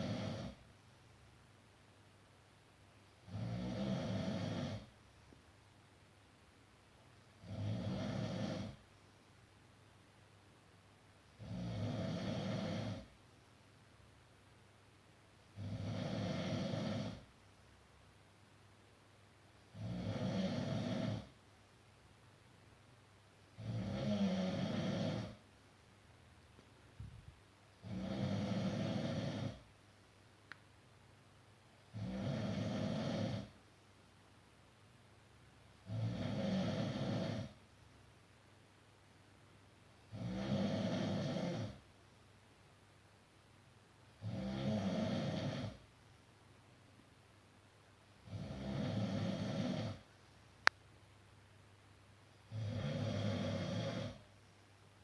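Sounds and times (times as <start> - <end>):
person snoring: 0.0 - 0.6, 3.2 - 4.9, 7.4 - 8.8, 11.4 - 13.1, 15.6 - 17.3, 19.7 - 21.3, 23.6 - 25.4, 27.8 - 29.6, 31.9 - 33.6, 35.8 - 37.6, 40.1 - 41.8, 44.2 - 45.8, 48.2 - 50.1, 52.5 - 54.2.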